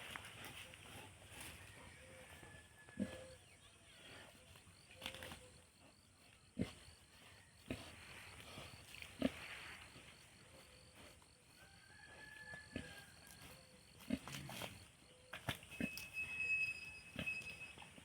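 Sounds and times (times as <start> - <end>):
pigs grunting: 2.9 - 5.6, 6.4 - 10.0, 12.7 - 14.9.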